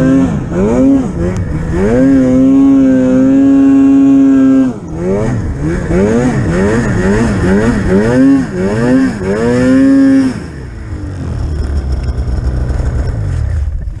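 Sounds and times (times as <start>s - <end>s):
snowmobile engine revving: 0.0s - 14.0s.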